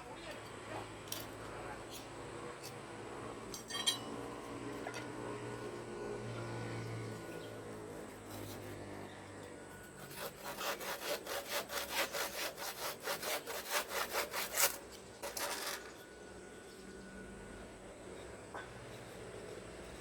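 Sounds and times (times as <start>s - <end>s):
hand saw cutting wood: 7.2s - 9.0s, 9.8s - 16.0s.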